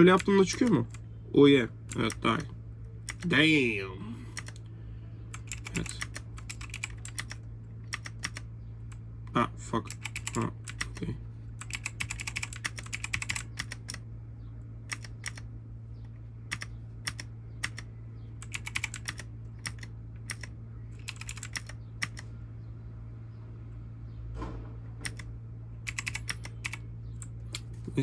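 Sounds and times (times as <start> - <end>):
steady low hum: 0.0 - 28.0
mechanical keyboard keys clicking: 0.1 - 1.0, 1.9 - 2.5, 3.1 - 3.3, 4.4 - 4.6, 5.3 - 8.5, 9.9 - 14.0, 14.9 - 15.5, 16.5 - 22.2, 25.0 - 25.3, 25.9 - 27.9.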